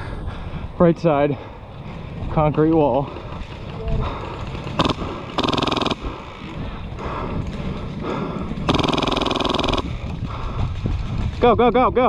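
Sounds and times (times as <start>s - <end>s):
airsoft gun full-auto bursts: 4.5s - 6.6s, 8.6s - 10.1s.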